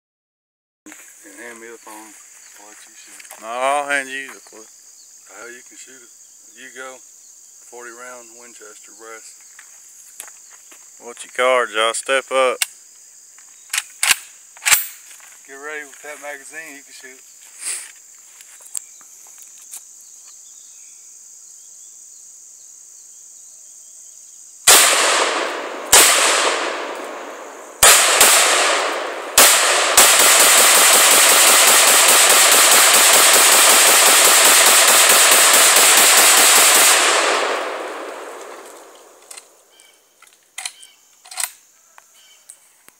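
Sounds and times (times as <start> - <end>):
rapid gunfire: 24.7 - 38.5
pistol gunshots: 24.7 - 39.2.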